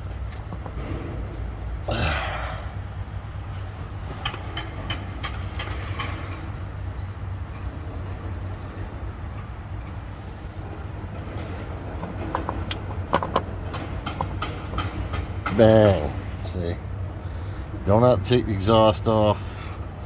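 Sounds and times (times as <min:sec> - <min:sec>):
metal clicks and knocks: 0:00.0 - 0:01.7, 0:04.2 - 0:06.6, 0:11.2 - 0:16.2
steady low hum: 0:00.0 - 0:20.0.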